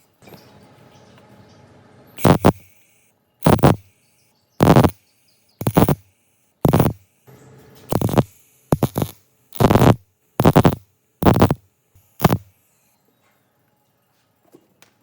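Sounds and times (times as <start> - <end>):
hand tool rasping on metal: 4.6 - 4.9, 7.9 - 11.6.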